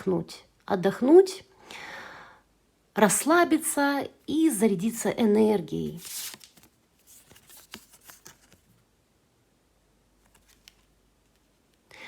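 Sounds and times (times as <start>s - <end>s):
cards rustling and tapping: 6.0s - 8.8s, 10.2s - 11.8s.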